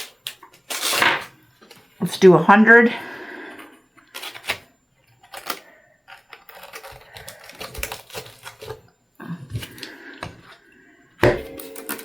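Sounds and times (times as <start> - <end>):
small hard parts clicking: 5.3 - 8.7.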